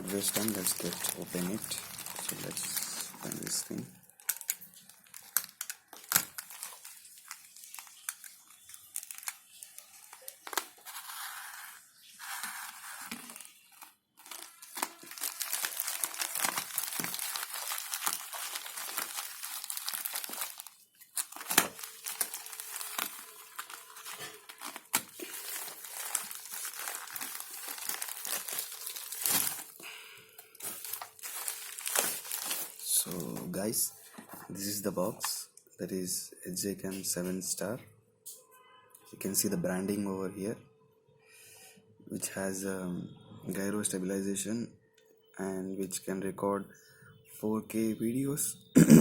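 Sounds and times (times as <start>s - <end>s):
packaging crinkling and tearing: 0.0s - 33.6s.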